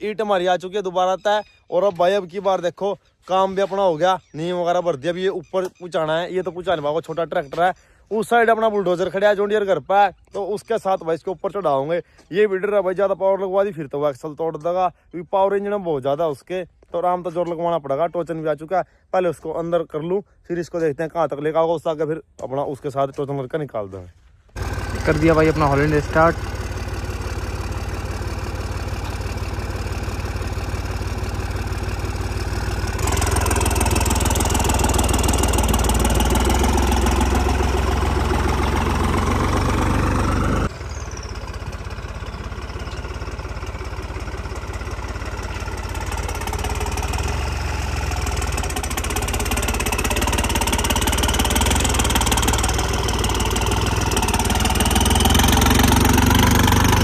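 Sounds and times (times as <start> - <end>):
tractor diesel engine running: 0.0 - 11.8, 24.5 - 57.0.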